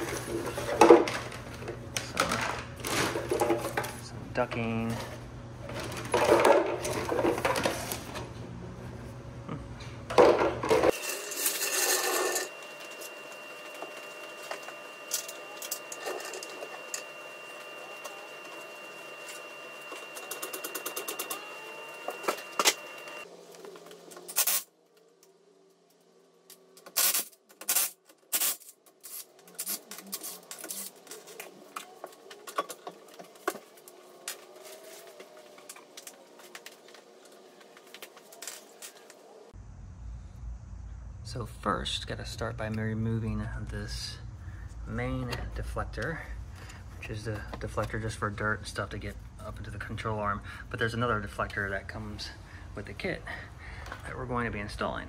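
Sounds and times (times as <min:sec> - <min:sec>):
faint steady hum: 0:29.6 - 0:55.0.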